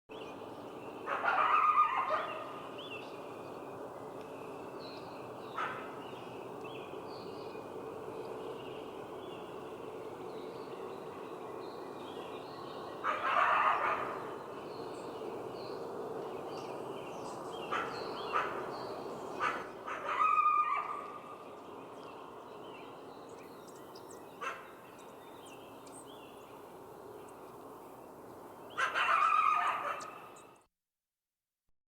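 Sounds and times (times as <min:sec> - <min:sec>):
coyote barking and howling: 0:01.0 - 0:02.7, 0:13.0 - 0:14.4, 0:19.4 - 0:21.3, 0:28.7 - 0:30.4
coyote yips: 0:01.1 - 0:02.4, 0:19.4 - 0:21.1, 0:28.8 - 0:30.2.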